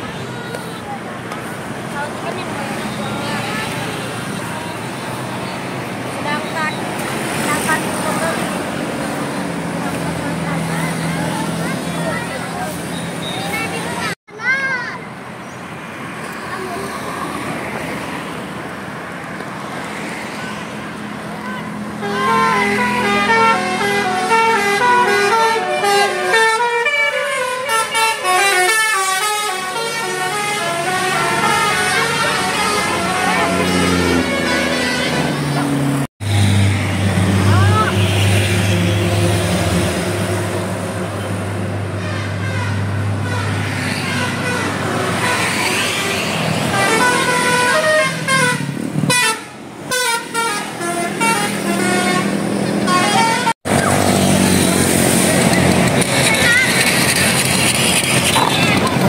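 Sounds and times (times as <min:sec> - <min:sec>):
musical bus horn tune: 0:21.5 - 0:35.5, 0:42.0 - 0:45.6, 0:46.6 - 0:53.6.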